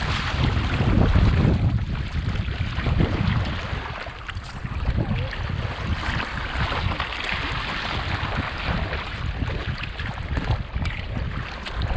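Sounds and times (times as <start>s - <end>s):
choppy water rushing: 0.0s - 11.9s
wind buffeting microphone: 0.0s - 11.9s.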